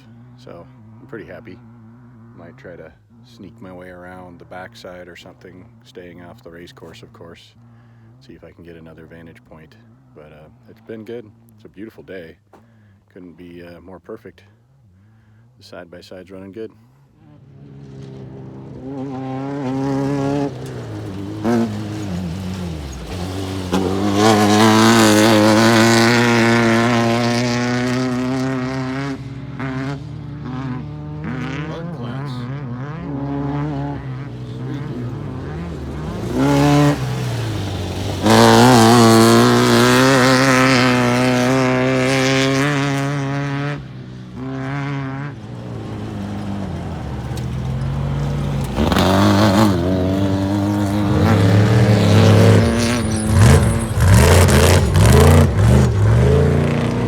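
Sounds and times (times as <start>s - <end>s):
utility vehicle engine running: 17.4s - 57.0s.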